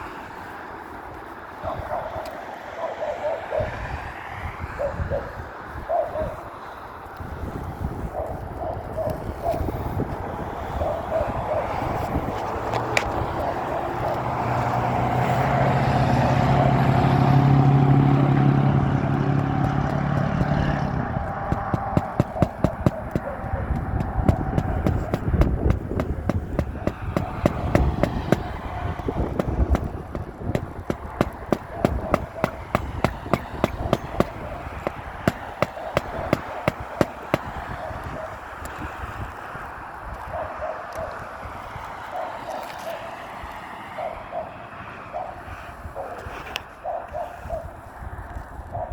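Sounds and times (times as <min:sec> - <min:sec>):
engine passing by: 0:10.8 - 0:37.8
sharp taps: 0:19.0 - 0:37.7
hammer striking nails: 0:19.1 - 0:37.6.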